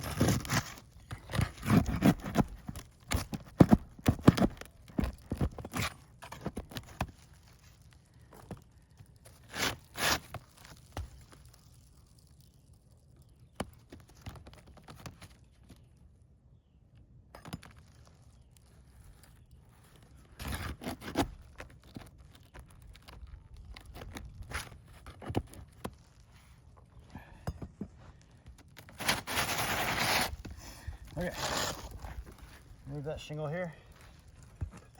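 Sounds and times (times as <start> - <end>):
shingles scraping on roof: 0.0 - 7.2, 9.3 - 11.2, 20.1 - 22.9, 28.8 - 32.7.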